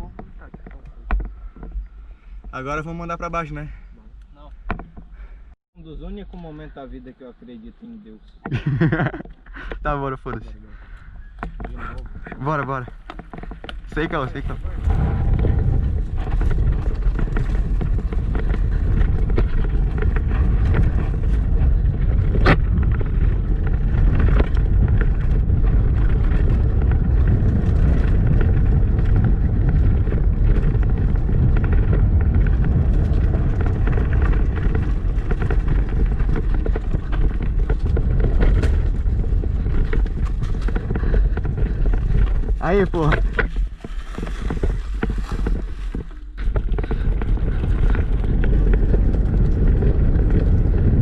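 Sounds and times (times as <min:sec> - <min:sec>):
mountain bike rattling on trail: 0:08.5 - 0:51.0
tyres rumbling: 0:09.3 - 0:51.0
wind rushing over microphone: 0:10.8 - 0:51.0.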